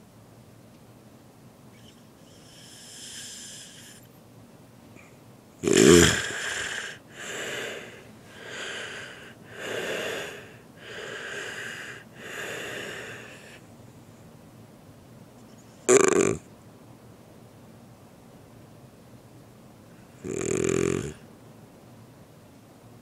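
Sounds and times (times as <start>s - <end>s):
person snoring: 2.4s - 4.0s, 5.6s - 13.6s, 15.9s - 16.4s, 20.2s - 21.2s.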